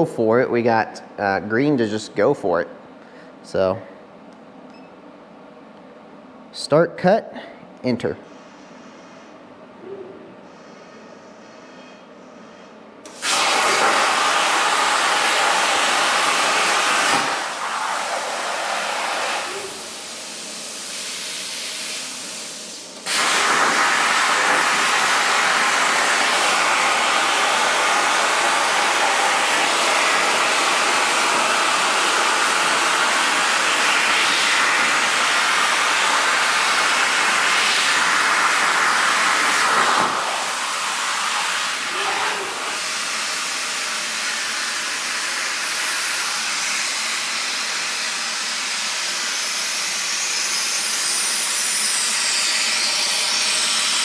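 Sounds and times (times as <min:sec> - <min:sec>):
plasma torch hissing: 0:13.1 - 0:54.0.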